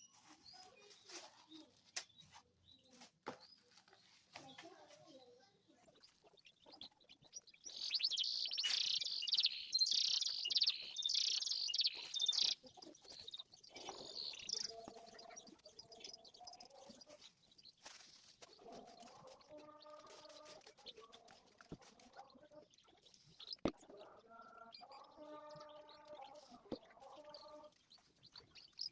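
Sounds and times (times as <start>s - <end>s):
canary trilling song: 0.0s - 28.9s.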